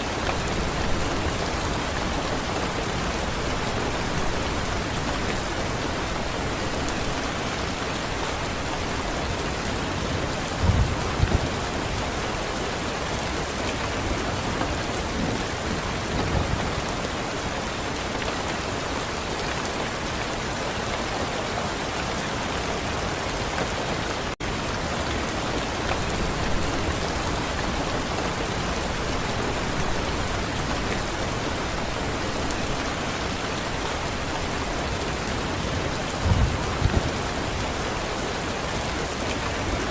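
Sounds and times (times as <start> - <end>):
heavy rain falling: 0.0 - 39.9
low rumbles of thunder: 10.1 - 12.0, 35.6 - 37.7.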